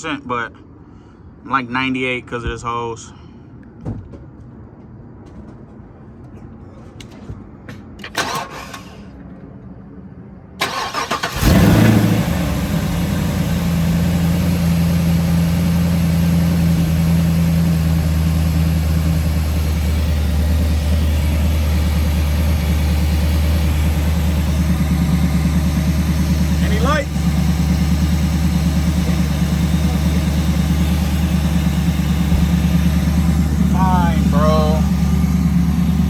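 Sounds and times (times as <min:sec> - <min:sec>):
engine cranking: 0:08.0 - 0:09.1, 0:10.6 - 0:15.8, 0:18.1 - 0:36.0
engine idling: 0:10.6 - 0:36.0
engine revving: 0:10.6 - 0:36.0.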